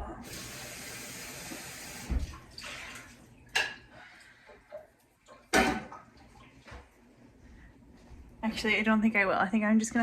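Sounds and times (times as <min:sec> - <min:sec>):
tap running water: 0:00.2 - 0:07.0.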